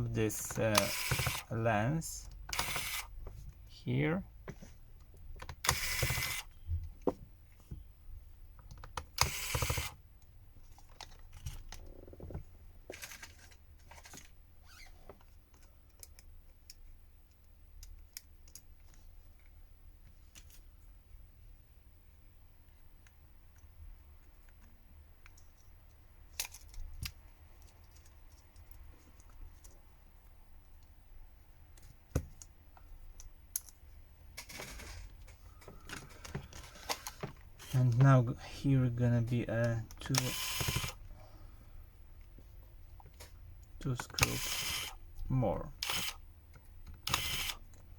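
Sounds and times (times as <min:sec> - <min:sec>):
small tools clicking on phone: 0:00.7 - 0:01.5, 0:02.3 - 0:03.1, 0:05.4 - 0:06.5, 0:08.6 - 0:10.0, 0:40.1 - 0:41.1, 0:44.0 - 0:45.0, 0:45.8 - 0:47.9.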